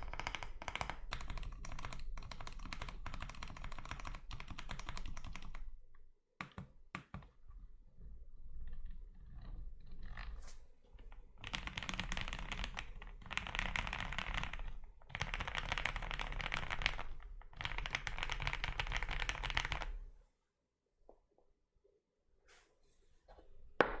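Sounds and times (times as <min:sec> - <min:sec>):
mechanical keyboard typing: 0:00.0 - 0:05.6, 0:11.4 - 0:20.0.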